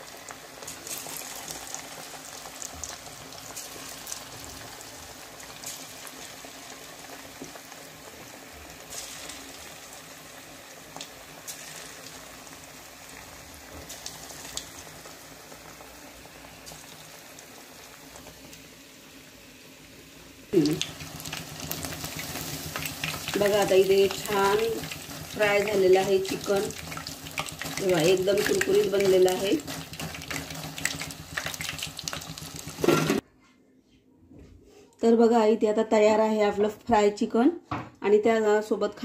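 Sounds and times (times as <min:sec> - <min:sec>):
chicken deep-frying in oil: 0:00.0 - 0:33.2
sharp crackles of oil: 0:10.9 - 0:18.7, 0:20.6 - 0:32.8.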